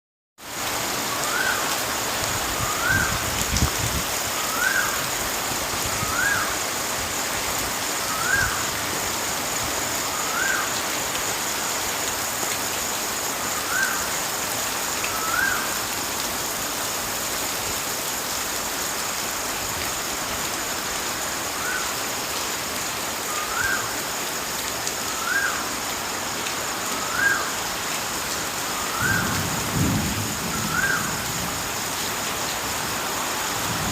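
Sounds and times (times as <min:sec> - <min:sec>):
water rushing: 0:00.4 - 0:33.9
bird call rising and falling: 0:27.0 - 0:27.6, 0:28.7 - 0:29.4.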